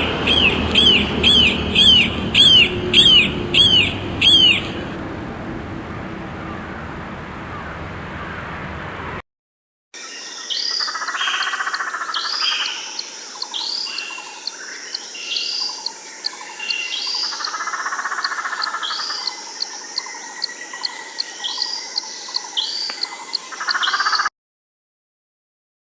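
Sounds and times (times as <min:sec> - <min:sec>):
high hooked bird chirp: 0:00.0 - 0:05.0
buzzy bird trills: 0:00.0 - 0:07.9.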